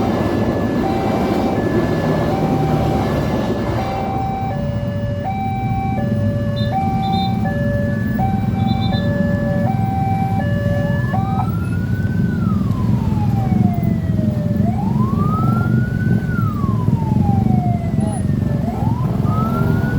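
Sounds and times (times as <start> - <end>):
electronic siren two-tone and wail: 0.0 - 15.8
road traffic rumble: 0.0 - 19.9.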